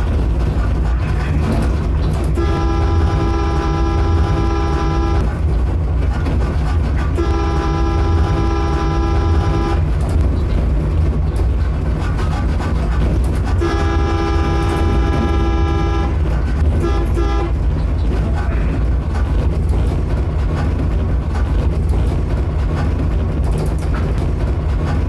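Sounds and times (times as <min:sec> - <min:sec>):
running train low rumble: 0:00.0 - 0:25.0
train horn blasts and toots: 0:02.3 - 0:05.4, 0:07.0 - 0:10.0, 0:13.4 - 0:17.8.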